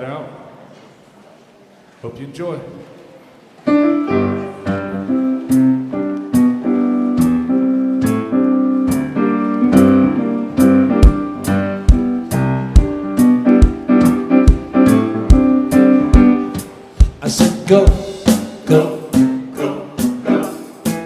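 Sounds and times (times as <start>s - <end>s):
piano chords: 3.7s - 21.0s
kick drum beat: 10.6s - 18.5s.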